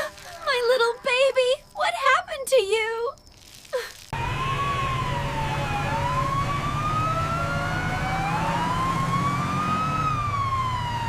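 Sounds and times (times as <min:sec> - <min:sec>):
wailing siren: 0:04.2 - 0:11.0.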